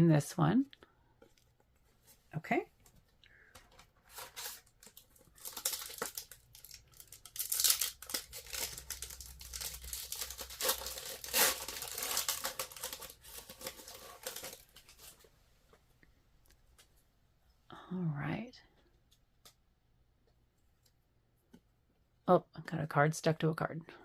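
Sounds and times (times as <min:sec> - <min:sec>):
wrapper crinkling: 0:04.0 - 0:15.3.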